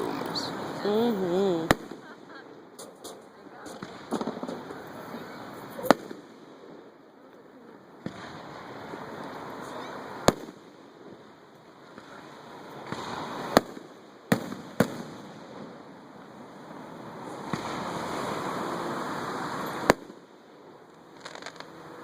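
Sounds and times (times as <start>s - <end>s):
firework shells bursting: 1.6s - 6.4s, 20.9s - 21.9s.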